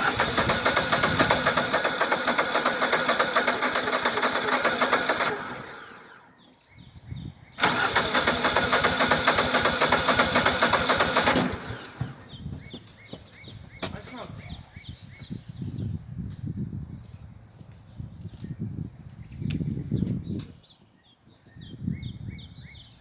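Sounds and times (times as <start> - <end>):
engine cranking on starter: 0.0 - 6.3, 7.6 - 12.4.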